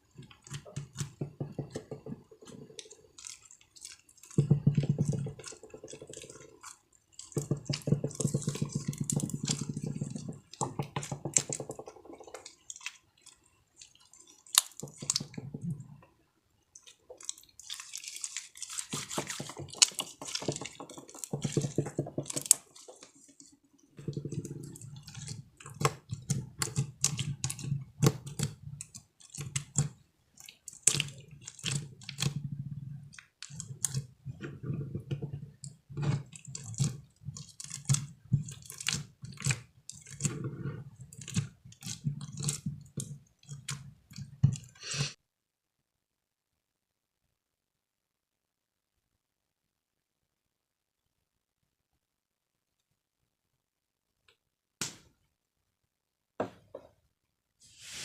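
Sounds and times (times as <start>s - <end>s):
slime squishing by hand: 0.0s - 45.2s.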